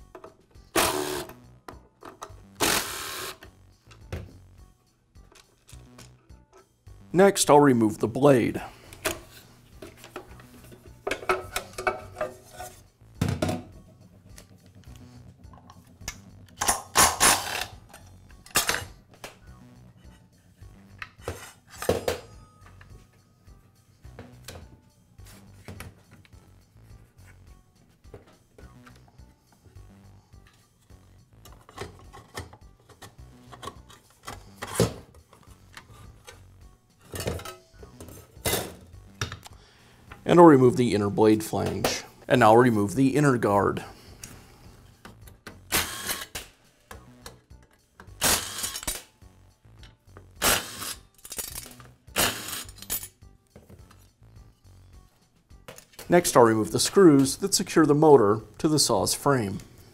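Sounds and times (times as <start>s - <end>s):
tools clicking and rubbing: 8.9s - 12.9s, 31.4s - 38.8s, 45.0s - 49.1s, 49.8s - 53.2s.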